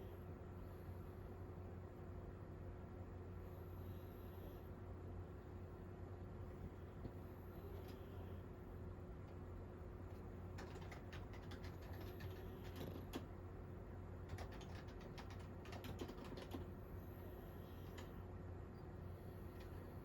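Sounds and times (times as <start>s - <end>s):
steady low hum: 0.0s - 20.0s
keyboard typing: 10.5s - 13.3s, 14.3s - 16.7s.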